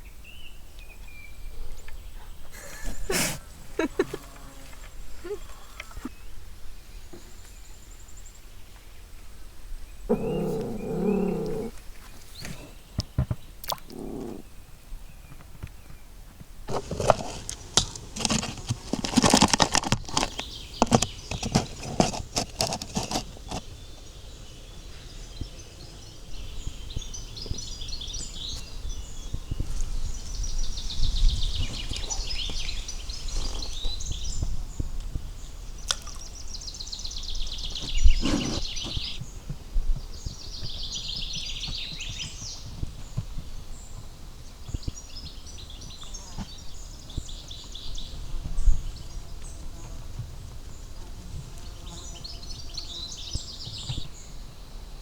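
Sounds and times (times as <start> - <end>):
songbird singing: 0.0 - 55.0
handling knocks and rustling: 15.3 - 23.9.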